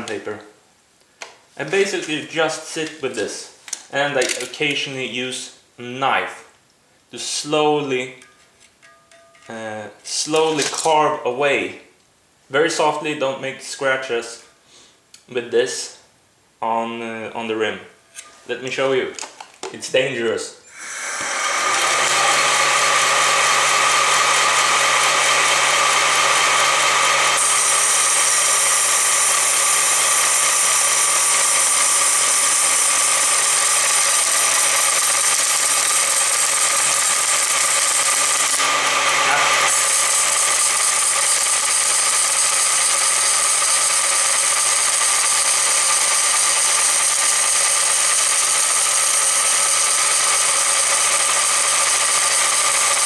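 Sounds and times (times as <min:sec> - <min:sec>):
motor spinning wheel rim: 0:20.7 - 0:53.0.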